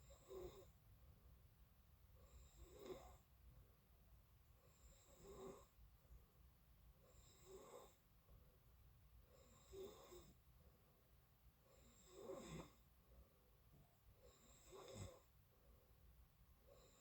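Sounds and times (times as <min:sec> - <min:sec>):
person snoring faintly: 0:00.0 - 0:00.7, 0:02.2 - 0:03.2, 0:04.7 - 0:05.8, 0:07.1 - 0:08.0, 0:09.4 - 0:10.4, 0:11.7 - 0:12.8, 0:14.3 - 0:15.3.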